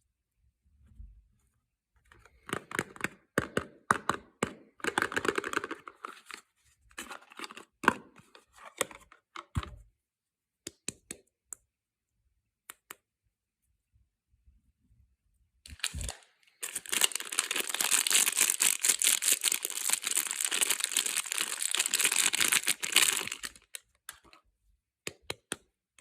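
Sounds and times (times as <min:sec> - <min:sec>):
packaging crinkling: 0:15.7 - 0:24.3.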